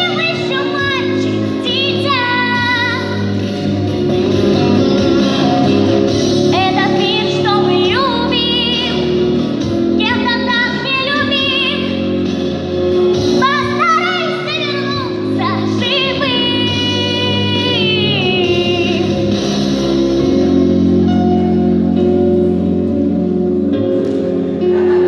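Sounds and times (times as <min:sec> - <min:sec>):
girl singing with vibrato: 0:00.0 - 0:03.8, 0:06.4 - 0:09.4, 0:10.0 - 0:12.1, 0:13.3 - 0:19.6
instrumental accompaniment: 0:00.0 - 0:25.0.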